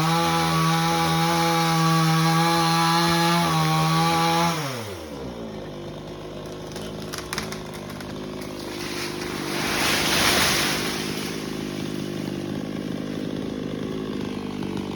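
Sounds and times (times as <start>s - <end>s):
chainsaw engine idling: 0.0s - 14.9s.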